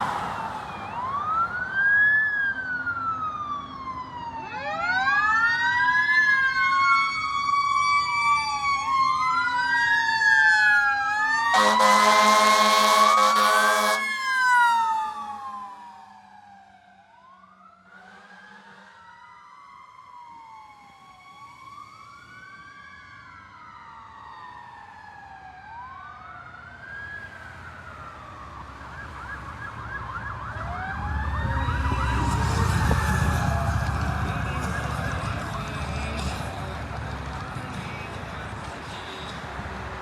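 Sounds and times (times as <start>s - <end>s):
truck engine: 0.0s - 2.1s, 11.5s - 16.0s, 17.9s - 19.1s, 28.6s - 40.0s
fast siren yelp: 0.2s - 35.2s
electronic siren wailing: 10.5s - 19.5s, 28.9s - 35.0s
air horn blast: 11.5s - 14.2s
mechanical siren winding down: 29.9s - 34.3s.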